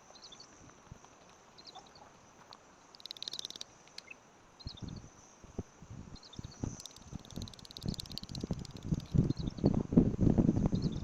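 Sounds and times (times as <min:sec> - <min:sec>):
high animal chirps: 0:03.0 - 0:04.2, 0:06.7 - 0:09.2.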